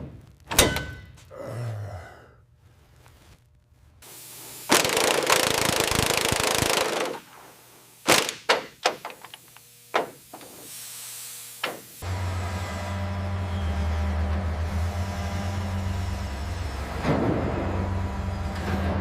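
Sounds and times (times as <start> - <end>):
sharp metal knocks: 0.5 - 1.2
deep engine running: 12.0 - 19.0.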